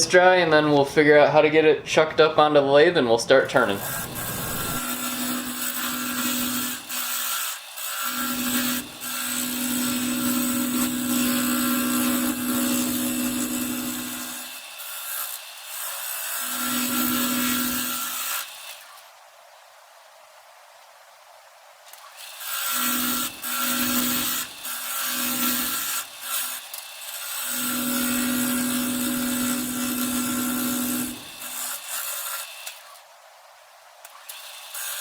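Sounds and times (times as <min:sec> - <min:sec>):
power tool cutting wood: 0:03.4 - 0:19.1, 0:21.9 - 0:33.1, 0:34.0 - 0:35.0.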